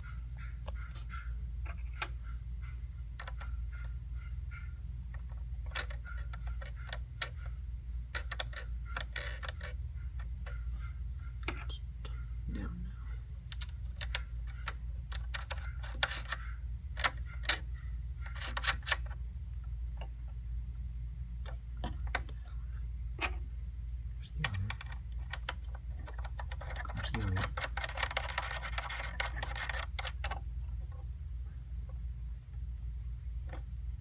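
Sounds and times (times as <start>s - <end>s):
computer hardware clicks and knocks: 5.1s - 7.5s, 8.1s - 10.6s, 13.5s - 19.2s, 24.4s - 30.4s
rattling clicks: 5.1s - 10.6s, 13.5s - 19.2s, 24.4s - 31.0s
low hum: 28.4s - 34.0s.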